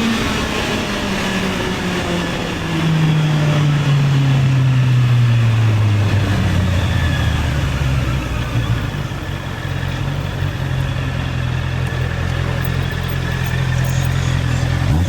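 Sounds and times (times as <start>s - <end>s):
motorcycle engine slowing down: 5.4s - 15.0s.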